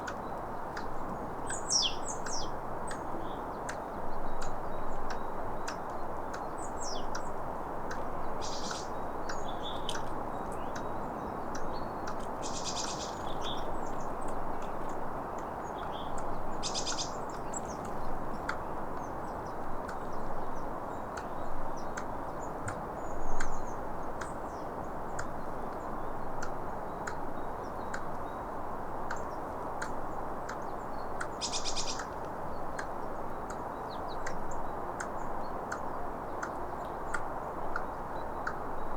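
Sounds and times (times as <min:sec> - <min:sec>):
squirrel clicking: 0:04.4 - 0:18.7
high bird trills: 0:08.4 - 0:08.9.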